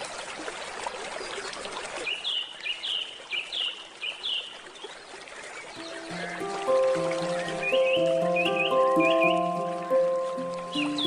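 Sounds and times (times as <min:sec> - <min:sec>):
gentle stream flowing: 0:00.0 - 0:11.0
bird chirping: 0:05.8 - 0:11.0.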